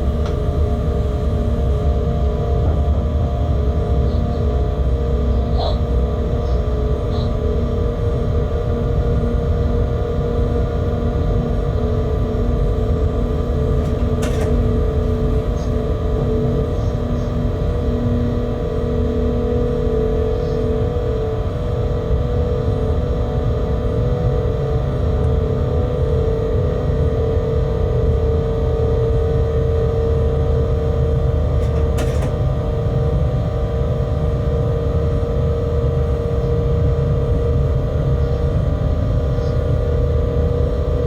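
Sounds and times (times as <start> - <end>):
locomotive rumble: 0.0 - 27.1, 27.8 - 41.0.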